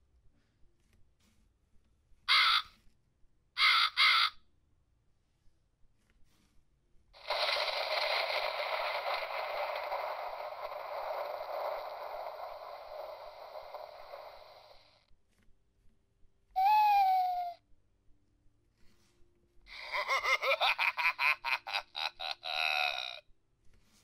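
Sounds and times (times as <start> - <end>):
owl hoot: 2.3 - 2.7, 3.6 - 4.3
thunder clap rumble: 7.2 - 14.9.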